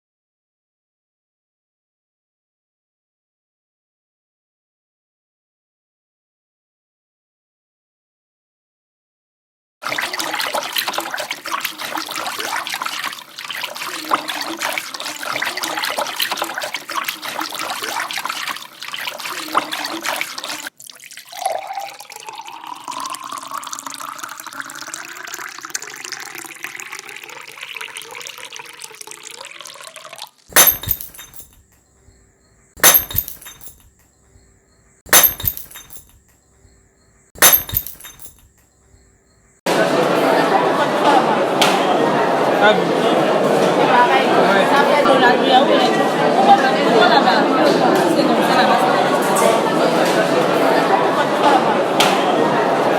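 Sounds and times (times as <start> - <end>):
water running: 9.8 - 31.6
liquid pouring with rising tone: 16.1 - 30.5
glass clinks: 30.5 - 31.8, 32.8 - 34.1, 35.1 - 36.4, 37.4 - 38.7.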